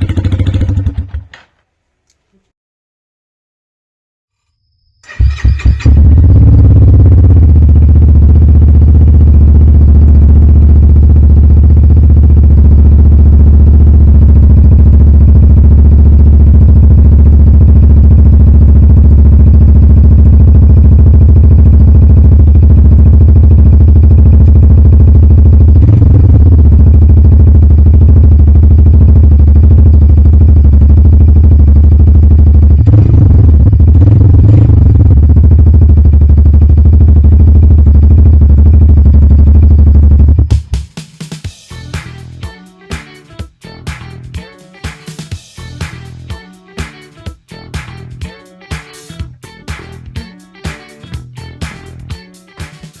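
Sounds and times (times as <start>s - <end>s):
motorcycle engine idling: 0.0s - 1.4s, 5.1s - 40.5s, 41.6s - 42.6s, 43.6s - 46.4s, 51.1s - 52.2s.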